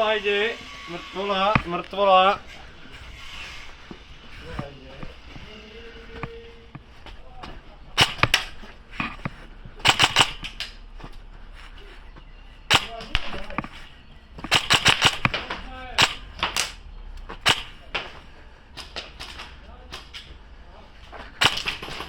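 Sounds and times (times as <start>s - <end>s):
airsoft guns firing: 7.9s - 10.8s, 12.7s - 16.8s, 17.4s - 20.2s, 21.4s - 22.0s.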